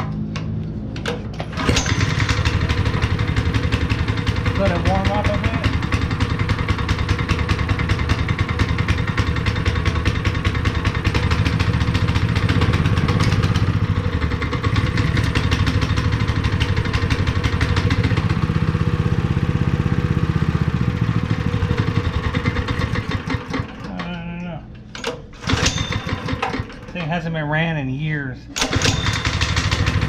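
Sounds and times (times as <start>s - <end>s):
small engine running: 1.5s - 23.7s, 28.7s - 30.0s.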